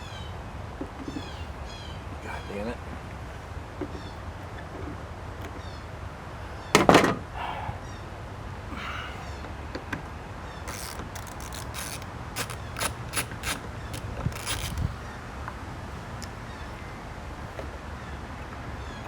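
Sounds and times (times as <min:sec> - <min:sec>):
hand tool clicking on bolt: 0:10.7 - 0:14.9.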